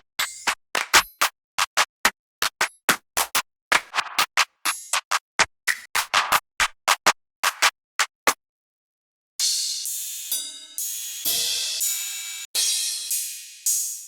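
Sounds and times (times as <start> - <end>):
drum kit one-shot samples: 9.4 - 14.0.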